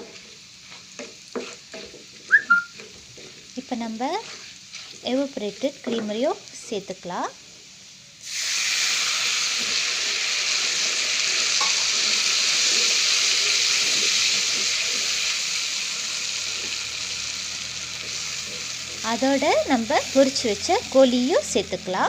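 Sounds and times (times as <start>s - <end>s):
cream sizzling in a hot pan: 0.0s - 22.0s.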